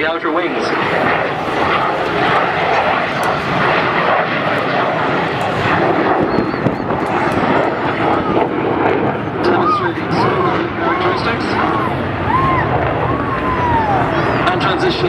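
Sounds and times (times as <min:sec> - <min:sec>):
jet engine roar with crackles: 0:00.0 - 0:15.0.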